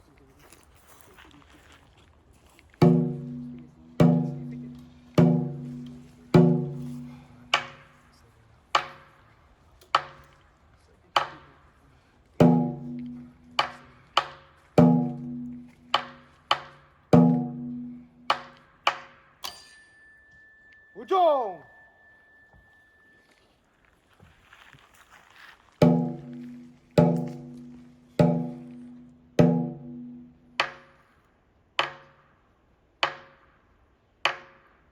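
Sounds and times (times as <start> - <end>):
percussion strokes ringing: 2.8 - 8.0, 12.4 - 23.5, 25.8 - 30.6.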